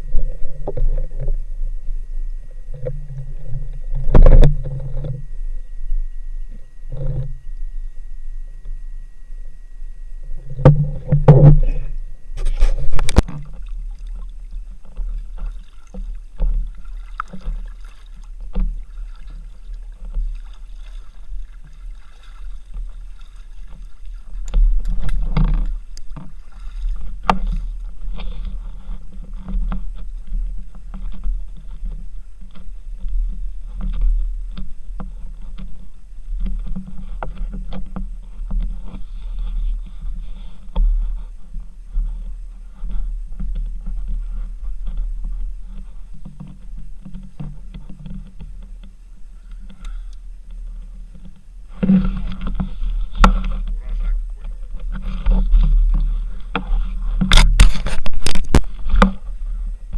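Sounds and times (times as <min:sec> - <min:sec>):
muffled underwater rumble: 0:00.0 - 0:59.9
small clicks and knocks: 0:54.8 - 0:59.2.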